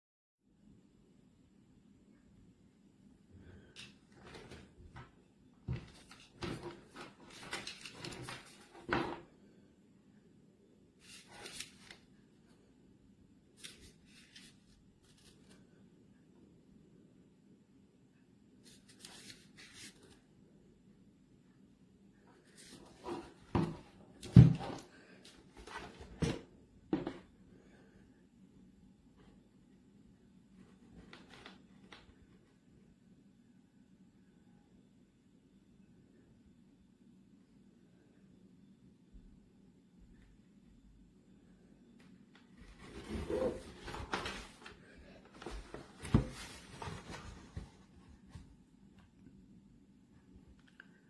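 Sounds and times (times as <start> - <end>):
handling knocks and clunks: 22.9 - 24.8
object rubbing and shifting: 42.7 - 44.7.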